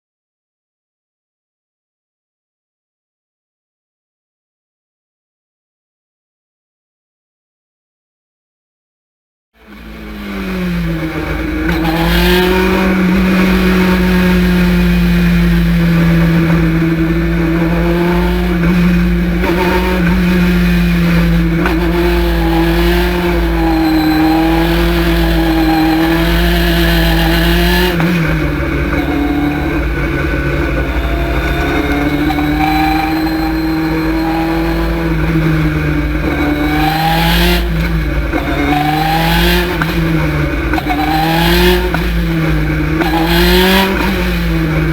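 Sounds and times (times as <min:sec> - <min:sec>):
race car engine running hard: 0:09.6 - 0:44.9.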